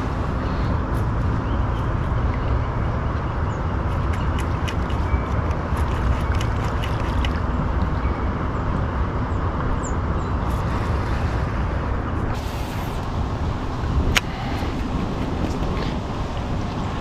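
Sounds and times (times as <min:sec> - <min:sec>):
road traffic rumble: 0:00.0 - 0:17.0
bright hiss: 0:12.4 - 0:14.8.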